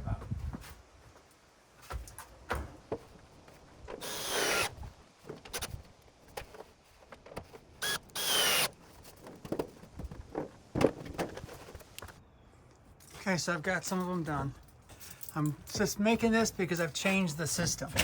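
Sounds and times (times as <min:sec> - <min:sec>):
power drill driving screws into wood: 0:04.0 - 0:04.8, 0:07.8 - 0:08.7
short knocks and handling: 0:09.0 - 0:12.2.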